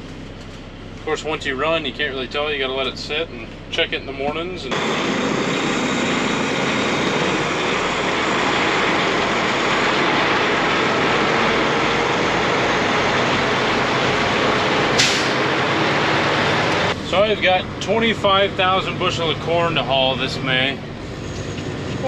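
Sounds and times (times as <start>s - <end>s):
truck road and engine noise: 0.0s - 22.0s
brief hiss: 15.0s - 15.4s.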